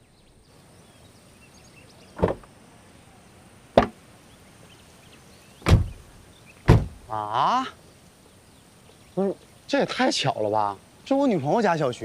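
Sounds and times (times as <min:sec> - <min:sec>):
faint bird chirps: 0:00.0 - 0:11.1
sharp thuds: 0:02.2 - 0:02.5, 0:03.8 - 0:04.0, 0:05.6 - 0:06.0, 0:06.7 - 0:07.1.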